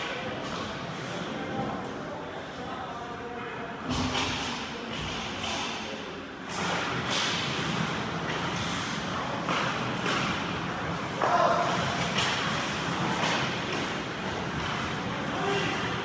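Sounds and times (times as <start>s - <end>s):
skate blades scraping ice: 7.1s - 15.8s.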